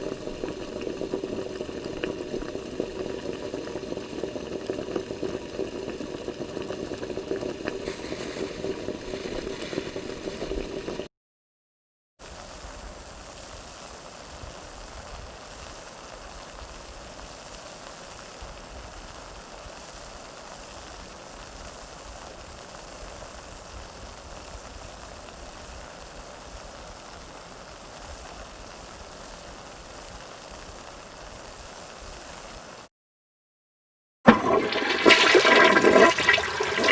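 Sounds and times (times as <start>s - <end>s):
churning bubbling water: 0.0s - 11.1s, 34.3s - 36.9s
running water rush: 0.0s - 11.1s, 34.3s - 36.9s.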